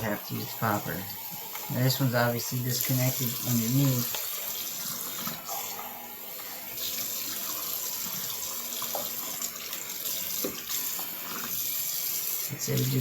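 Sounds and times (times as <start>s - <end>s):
water running from a faucet: 0.0s - 13.0s.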